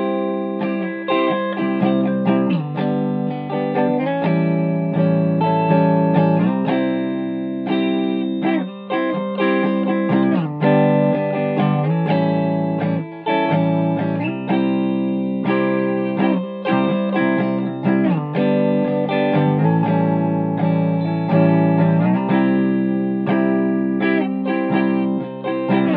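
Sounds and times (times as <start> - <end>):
electric guitar chords strummed: 0.0 - 25.9.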